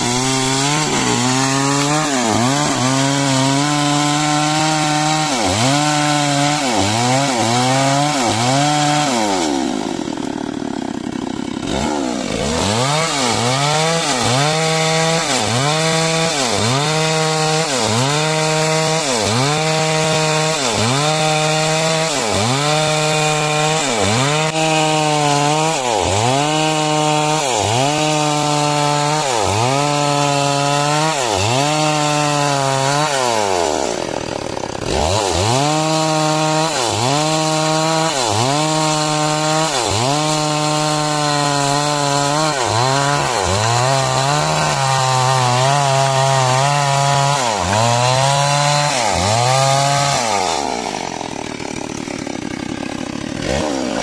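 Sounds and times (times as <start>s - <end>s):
chainsaw cutting timber: 0.0s - 54.0s.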